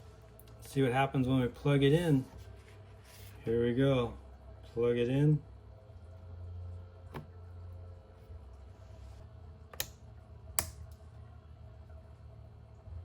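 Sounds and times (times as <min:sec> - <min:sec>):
low hum: 0:00.0 - 0:13.0
speaker control clicks: 0:09.7 - 0:10.0, 0:10.6 - 0:11.0.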